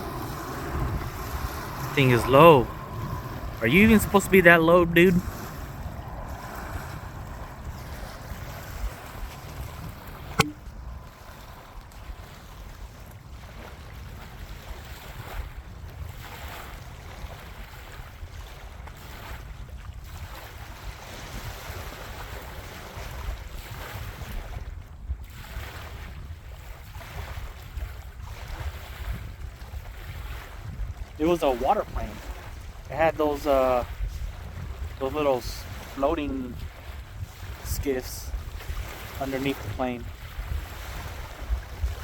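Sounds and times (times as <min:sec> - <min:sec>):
distant floatplane engine drone: 0:00.0 - 0:12.8
wind rumble on microphone: 0:00.0 - 0:42.0
sharp click: 0:10.4 - 0:10.6.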